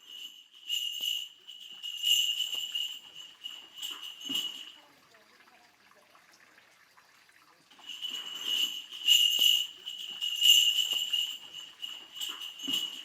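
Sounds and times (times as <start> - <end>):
bell cluster jingling: 0.0 - 4.8, 7.7 - 13.0.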